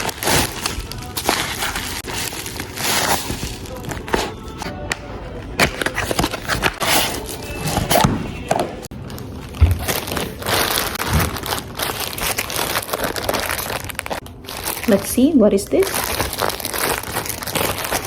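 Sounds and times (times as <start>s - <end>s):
plastic packaging crinkling: 0.0s - 18.0s
knocks and thuds: 9.5s - 10.2s, 11.0s - 11.5s.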